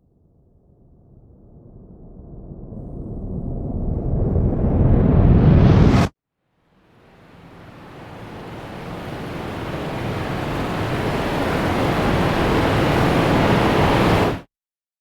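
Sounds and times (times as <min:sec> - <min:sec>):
rushing riser with low rumble: 0:00.6 - 0:06.1.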